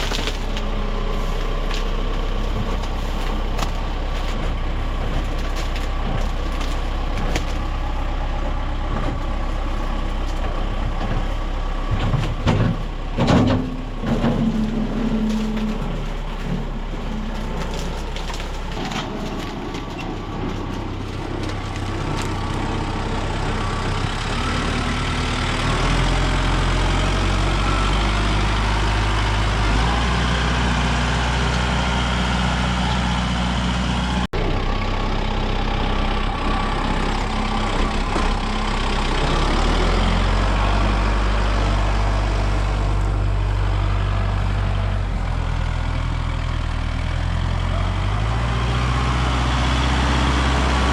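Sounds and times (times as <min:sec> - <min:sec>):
heavy vehicle engine running: 0:00.0 - 0:50.9.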